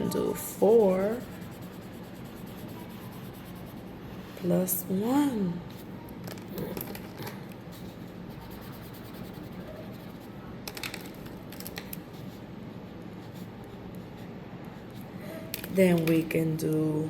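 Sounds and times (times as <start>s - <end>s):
coloring tool scratching on paper: 0.0s - 4.0s, 7.7s - 10.4s, 12.0s - 16.4s.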